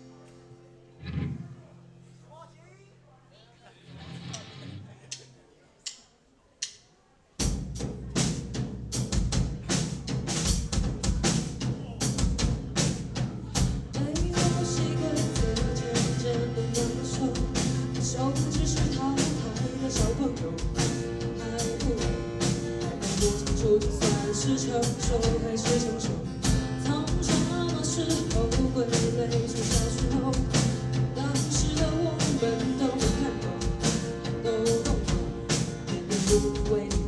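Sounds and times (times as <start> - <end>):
bass guitar: 0.9 - 1.8, 3.9 - 5.0, 7.6 - 37.0
drum kit kick and snare: 7.4 - 37.0.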